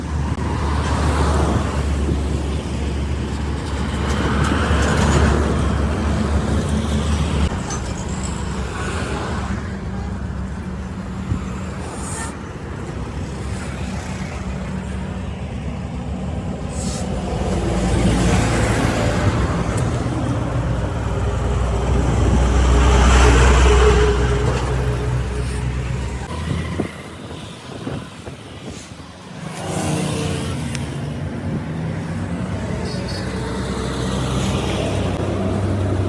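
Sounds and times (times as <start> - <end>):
motor vehicles passing: 16.6 - 36.0.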